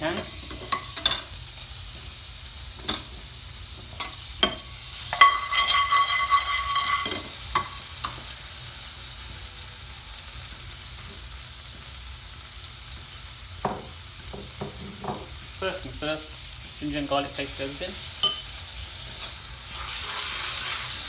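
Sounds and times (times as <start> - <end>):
spoon scraping pan: 0.0 - 2.1, 2.7 - 8.4, 18.0 - 21.0
oil sizzling in pan: 0.0 - 21.0
metal spoon knocking on pan: 4.0 - 8.2, 13.6 - 15.3.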